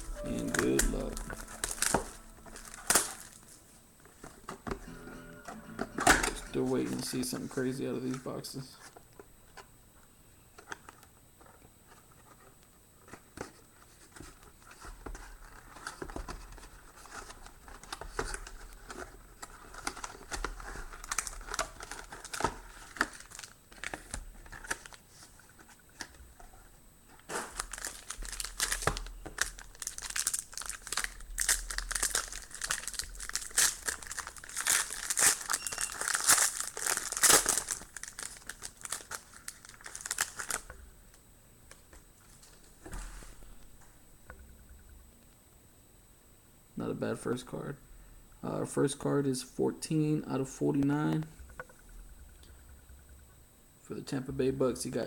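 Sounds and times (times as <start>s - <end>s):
plastic wrapping tearing and crinkling: 0.0s - 3.5s, 16.9s - 25.0s, 27.2s - 40.8s.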